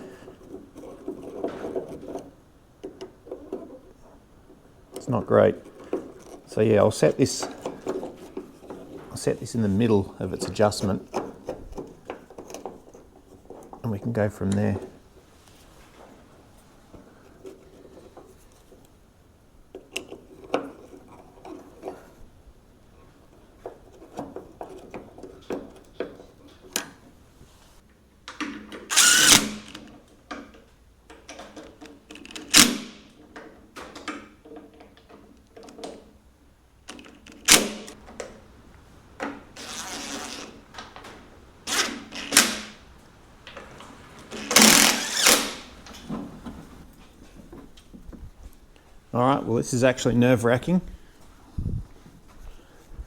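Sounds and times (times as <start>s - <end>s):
metal clicks and knocks: 0.3s - 15.0s
short loud tool bursts: 28.9s - 29.7s, 44.4s - 45.7s.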